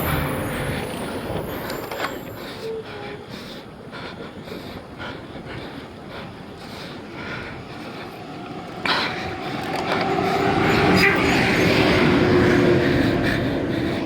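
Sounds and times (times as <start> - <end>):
motor vehicle passing: 0.0 - 2.2, 7.6 - 14.0
person breathing hard: 0.0 - 14.0.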